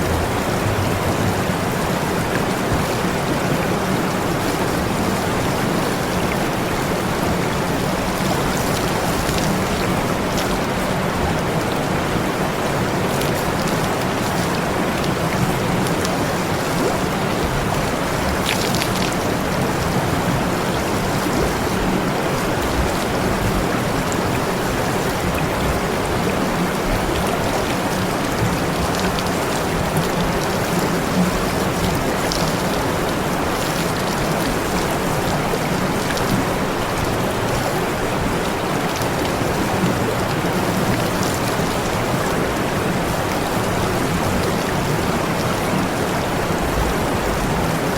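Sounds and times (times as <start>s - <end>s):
low hum: 0.0s - 2.8s.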